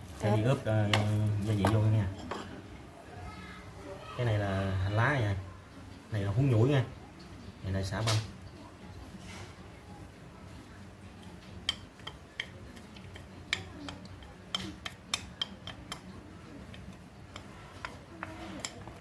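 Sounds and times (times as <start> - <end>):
utensils clinking against dishes: 0.9 - 2.6, 11.2 - 19.0.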